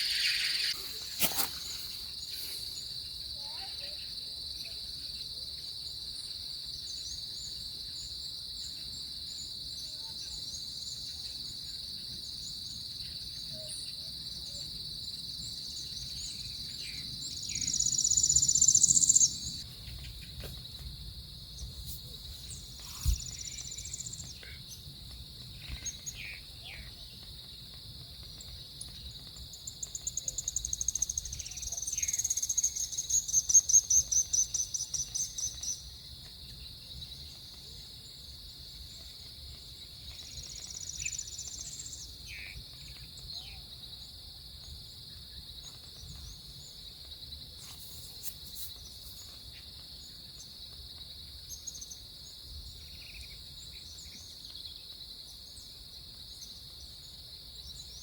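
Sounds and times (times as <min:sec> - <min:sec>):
rapid high chirps: 0:00.0 - 0:00.9
insects droning: 0:00.0 - 0:58.0.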